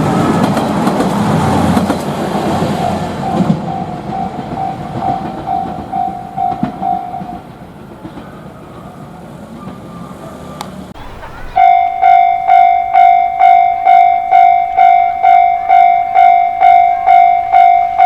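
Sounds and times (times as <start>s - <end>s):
train wheels clattering on rails: 0.0s - 18.0s
crossing warning bell ringing: 2.0s - 7.6s, 11.0s - 18.0s.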